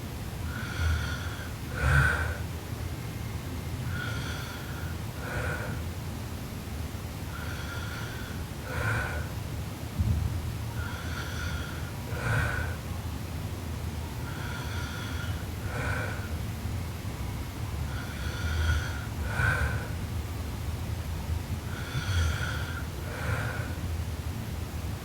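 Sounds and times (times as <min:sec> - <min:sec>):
steady low rumble: 0:00.0 - 0:25.0
girl snoring: 0:00.6 - 0:02.4, 0:21.7 - 0:23.8
low thump: 0:10.0 - 0:10.3.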